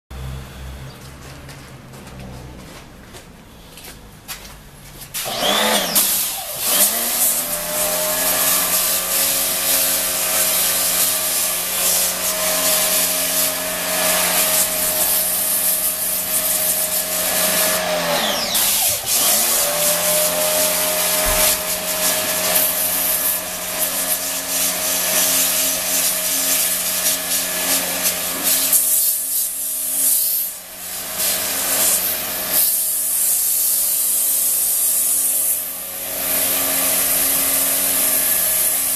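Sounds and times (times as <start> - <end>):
pressure washer pump humming: 5.2 - 38.9
water jet hissing on sponge: 21.2 - 30.6, 31.2 - 35.6.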